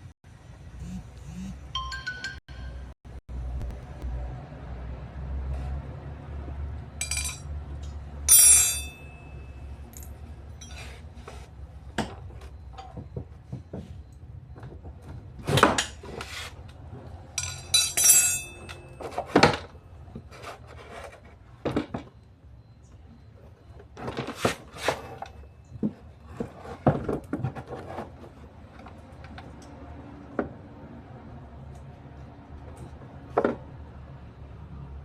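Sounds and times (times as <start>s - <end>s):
ringing metallic rattle: 7.0s - 7.5s, 8.3s - 10.9s, 17.3s - 19.0s
metal tools clinking and knocking: 7.0s - 11.2s, 17.3s - 19.7s.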